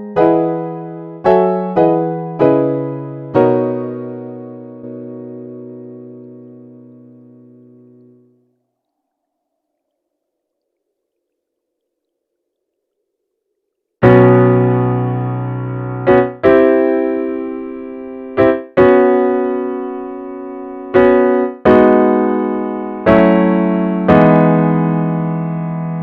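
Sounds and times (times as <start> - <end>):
electric piano chords: 0.0 - 8.4, 14.0 - 26.0.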